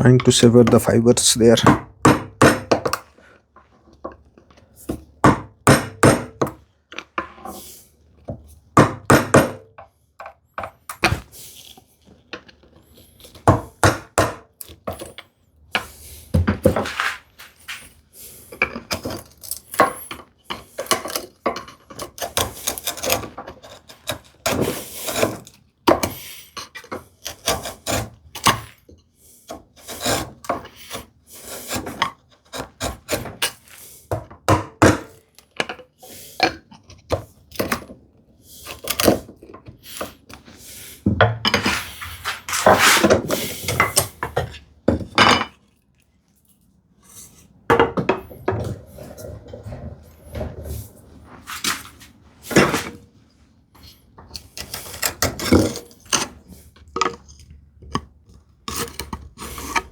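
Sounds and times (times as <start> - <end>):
chisel knocking and scraping wood: 0.0 - 4.2, 4.9 - 6.6, 8.3 - 11.3, 13.3 - 15.0, 15.8 - 17.3, 18.6 - 28.7, 29.5 - 35.8, 38.7 - 45.6, 53.8 - 59.9.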